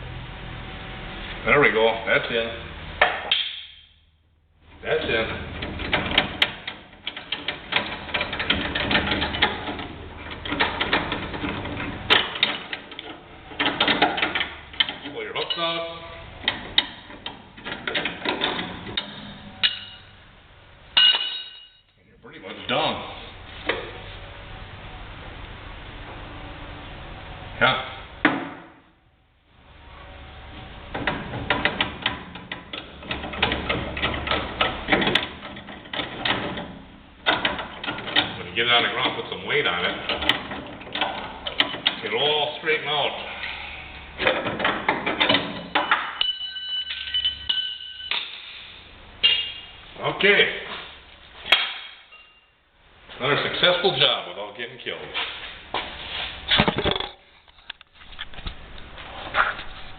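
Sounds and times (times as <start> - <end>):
sharp metallic clack: 3.0 - 4.0, 21.0 - 21.9, 45.2 - 49.7.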